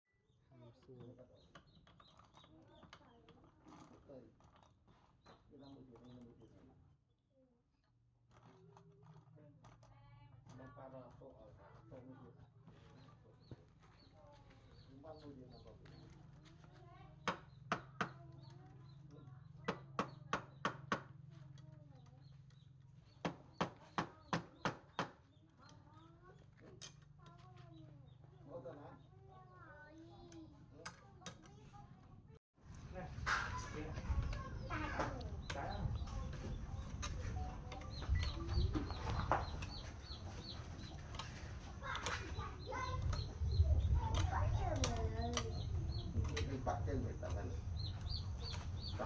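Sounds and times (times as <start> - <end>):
tool knocking on wood: 17.2 - 18.4, 19.6 - 21.2, 23.1 - 25.2.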